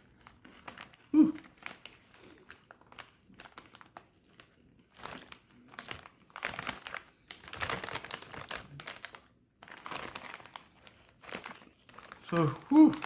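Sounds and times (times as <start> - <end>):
chip bag crinkling: 0.0 - 13.0.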